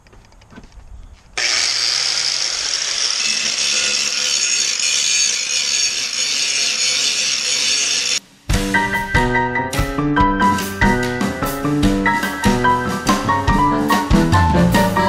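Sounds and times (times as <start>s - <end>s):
angle grinder grinding steel: 1.4s - 8.2s.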